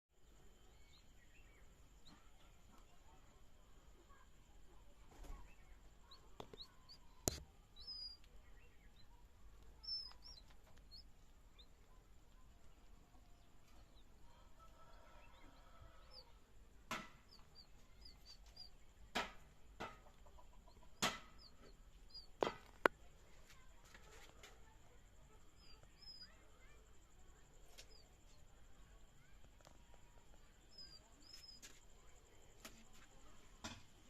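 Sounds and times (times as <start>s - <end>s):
chicks peeping: 4.0s - 26.9s, 27.6s - 31.6s
sharp knocks: 21.0s - 21.7s.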